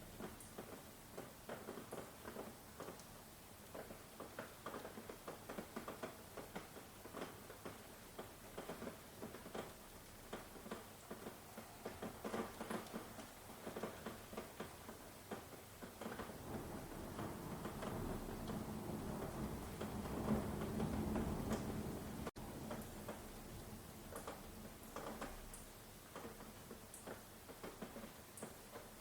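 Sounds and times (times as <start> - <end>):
rain drips and patter: 0.0 - 29.0
distant thunder rumble: 16.1 - 23.9.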